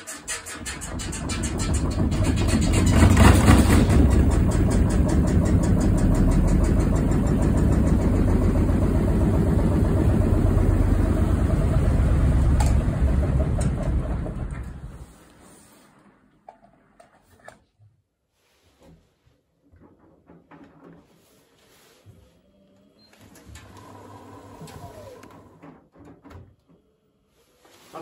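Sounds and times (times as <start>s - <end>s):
washing machine rumbling and rattling: 0.0s - 16.2s.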